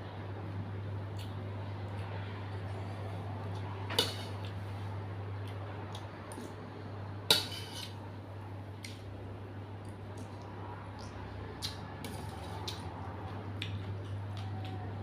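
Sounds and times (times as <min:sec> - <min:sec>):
steady low hum: 0:00.0 - 0:15.0
cutlery clinking against bowl: 0:03.9 - 0:04.5, 0:07.3 - 0:08.0.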